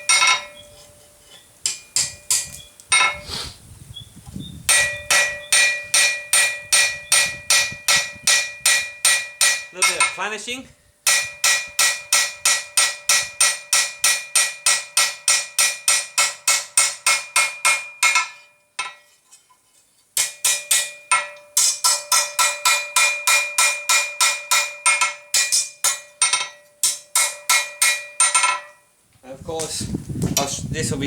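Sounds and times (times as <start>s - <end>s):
hammer ringing on anvil: 0.0s - 0.6s, 4.7s - 10.3s, 11.1s - 19.0s, 20.2s - 28.9s.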